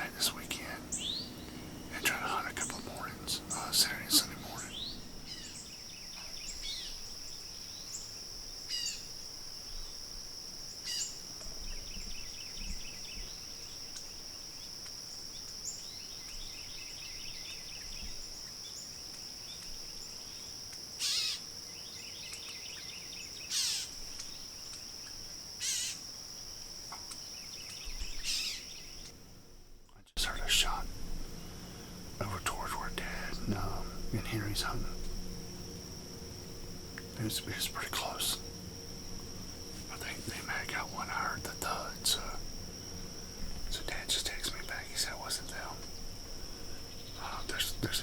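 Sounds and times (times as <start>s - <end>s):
bird chirps: 0.0s - 8.1s
insects droning: 0.0s - 48.0s.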